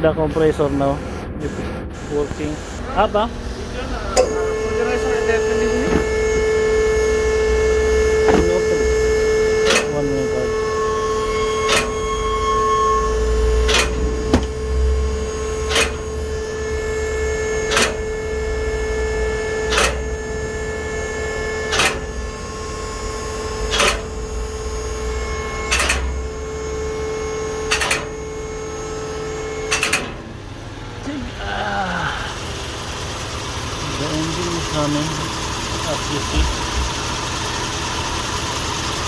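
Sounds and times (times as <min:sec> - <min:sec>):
mechanical hum: 0:00.0 - 0:39.0
sharp click: 0:09.6 - 0:09.9, 0:11.7 - 0:12.0, 0:13.7 - 0:14.5, 0:15.7 - 0:16.0, 0:17.7 - 0:18.0, 0:19.7 - 0:20.0, 0:21.7 - 0:22.0, 0:23.7 - 0:24.1, 0:25.7 - 0:26.1, 0:27.7 - 0:28.1, 0:29.7 - 0:30.2.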